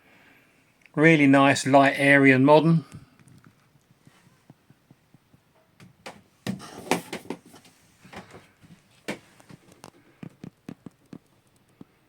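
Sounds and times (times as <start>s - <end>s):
wooden knocks and clunks: 4.6s - 9.6s.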